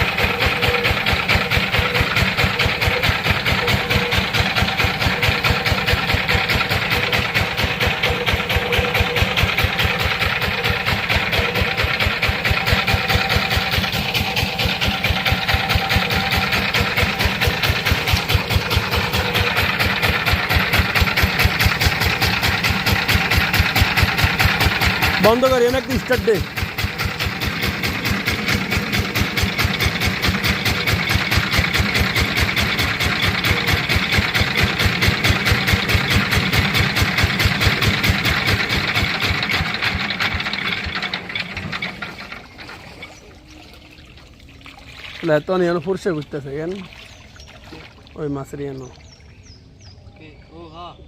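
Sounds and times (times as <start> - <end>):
diesel engine idling: 0.0 - 51.0.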